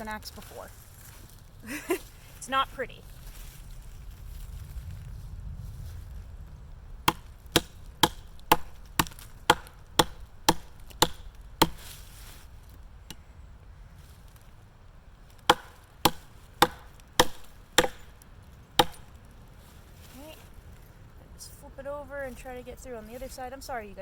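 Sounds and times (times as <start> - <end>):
tomahawk chopping branch: 7.0 - 13.2, 15.3 - 19.3.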